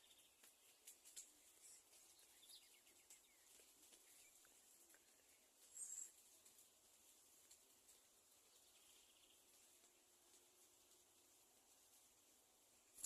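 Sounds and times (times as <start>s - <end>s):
bird chirps: 0.0s - 6.2s, 8.4s - 9.5s
faint outdoor ambience: 0.0s - 13.0s.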